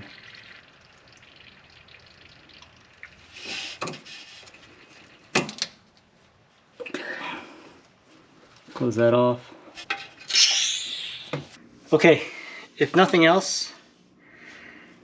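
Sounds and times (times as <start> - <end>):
liquid trickling: 0.0 - 5.3.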